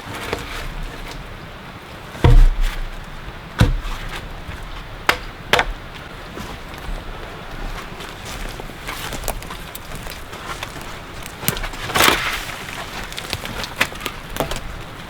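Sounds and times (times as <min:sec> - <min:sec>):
heavy knocks on wood: 0:02.2 - 0:06.0.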